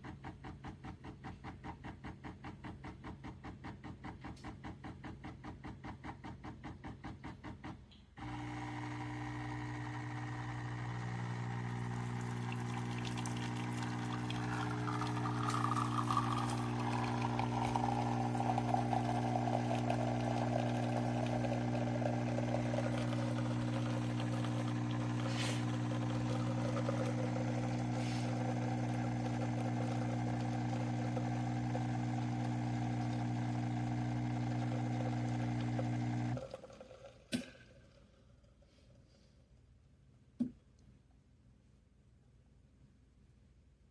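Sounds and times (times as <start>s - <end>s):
espresso machine pump humming: 8.2s - 37.5s
liquid pouring into cup: 8.3s - 38.1s.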